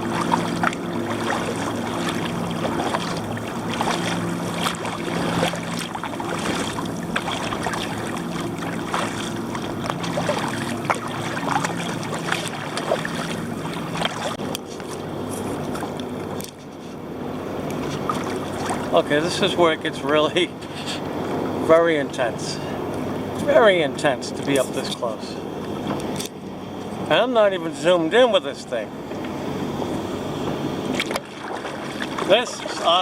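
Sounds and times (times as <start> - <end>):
water splashing against a kayak: 0.0 - 16.8, 17.7 - 19.2, 30.8 - 33.0
boat engine drone: 0.0 - 33.0.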